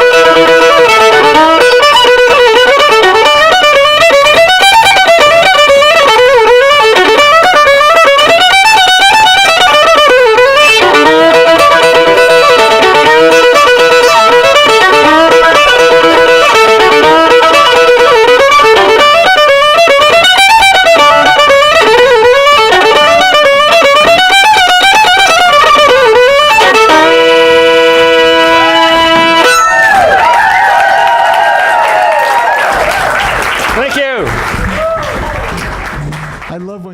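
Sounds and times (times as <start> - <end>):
violin melody with vibrato: 0.0 - 30.4, 33.7 - 36.6
held accompanying chords: 0.0 - 30.7, 33.2 - 36.9.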